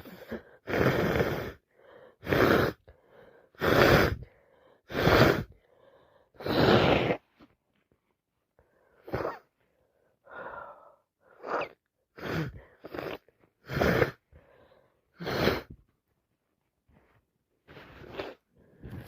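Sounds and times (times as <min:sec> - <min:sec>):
wheezy gasping breaths: 0:00.0 - 0:07.3, 0:08.6 - 0:15.9, 0:16.9 - 0:19.0.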